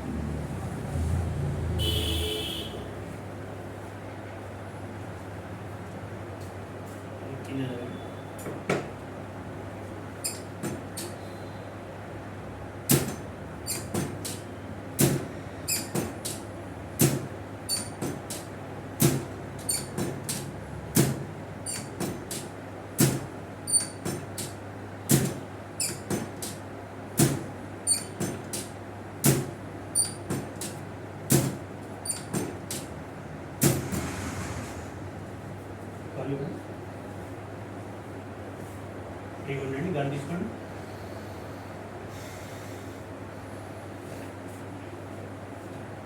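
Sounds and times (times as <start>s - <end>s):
table creaking and squeaking: 19.6s - 20.0s.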